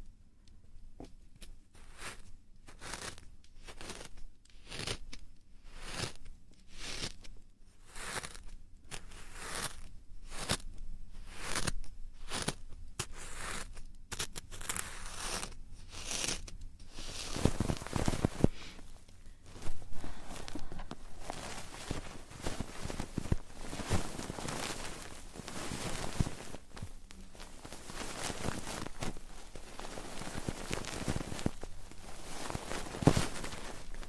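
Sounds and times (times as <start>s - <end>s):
hands rubbing a microphone: 7.8s - 10.6s, 11.2s - 13.8s, 14.6s - 34.0s.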